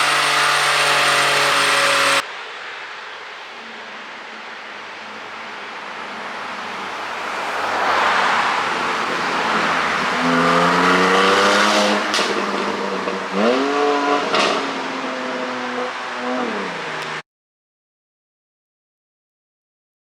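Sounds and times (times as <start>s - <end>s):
car engine accelerating: 0.0s - 2.2s, 3.6s - 17.2s.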